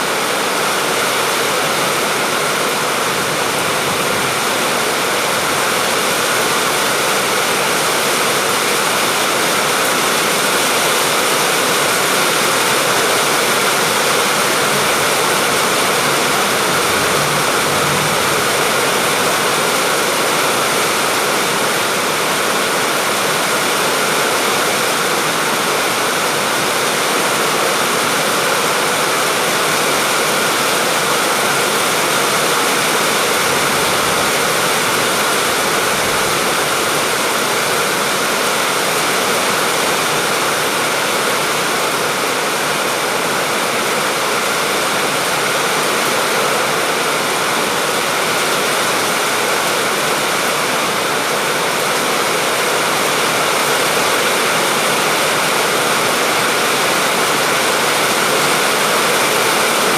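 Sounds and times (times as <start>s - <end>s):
steady rain falling: 0.0s - 59.9s.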